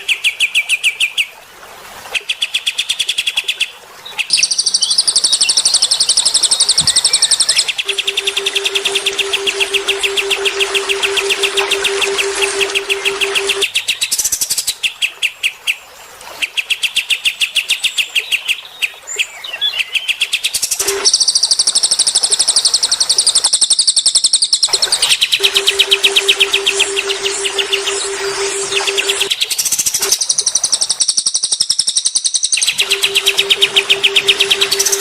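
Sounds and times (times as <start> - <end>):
high dense bird trill: 31.2 - 35.0.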